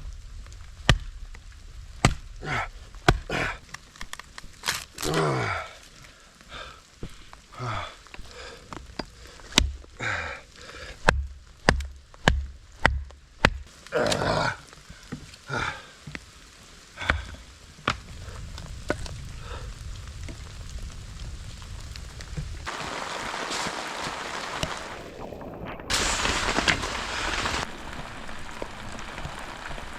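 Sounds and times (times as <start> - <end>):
rain hissing: 0.0 - 12.8, 13.6 - 29.9
wood cracking and knocking: 3.0 - 5.0, 8.2 - 10.0, 11.0 - 15.4, 17.0 - 19.3, 25.7 - 29.9.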